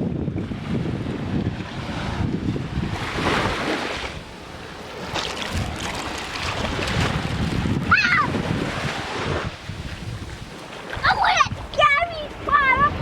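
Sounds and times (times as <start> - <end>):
surf washing onto beach: 0.0 - 13.0
wind buffeting microphone: 0.0 - 13.0.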